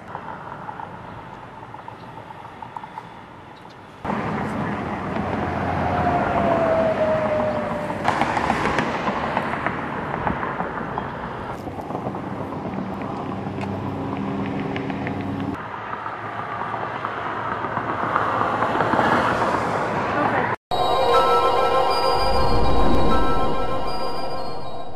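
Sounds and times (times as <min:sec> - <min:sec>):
traffic noise: 0:00.0 - 0:24.9
falling whine: 0:20.7 - 0:24.9
engine hum: 0:20.8 - 0:24.9.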